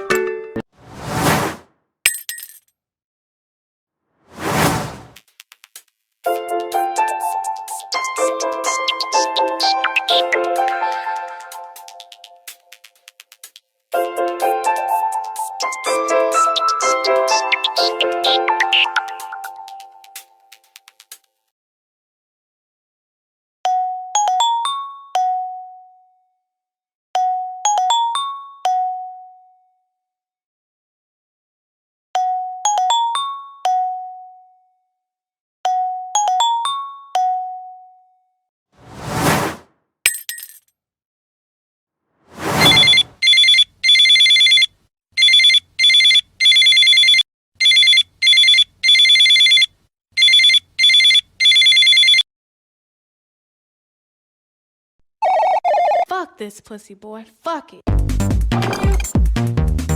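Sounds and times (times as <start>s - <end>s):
short whoosh: 0.8s - 1.6s, 4.3s - 5.2s, 38.8s - 39.7s, 42.3s - 43.2s
phone ringtone chime melody: 42.8s - 49.6s, 50.2s - 52.2s.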